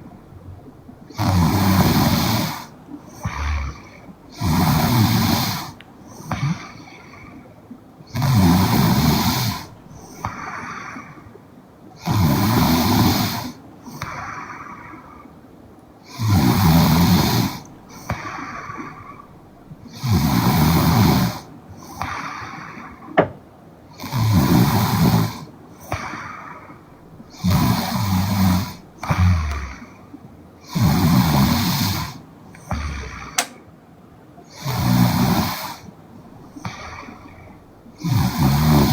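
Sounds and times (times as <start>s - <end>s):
woman snoring: 27.4s - 29.9s, 30.7s - 33.5s.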